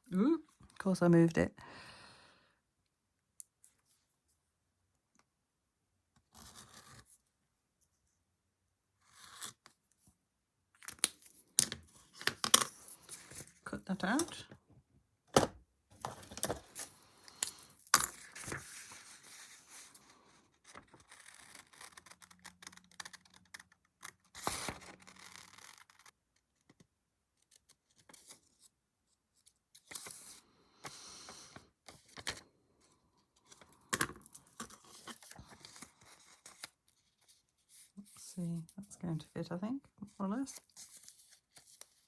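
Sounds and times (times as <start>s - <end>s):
paper crinkling: 16.0s - 20.0s.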